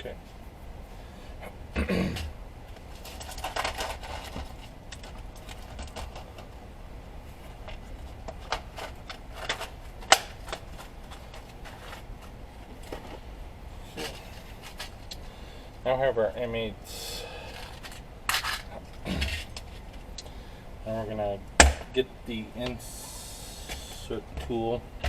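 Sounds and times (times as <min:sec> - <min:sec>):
small parts clicking and rattling: 0:03.0 - 0:06.6, 0:07.4 - 0:12.1.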